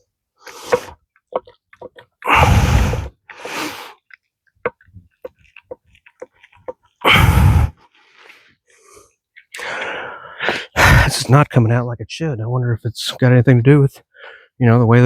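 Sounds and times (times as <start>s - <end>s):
breathy puffs of air: 2.3s - 4.0s.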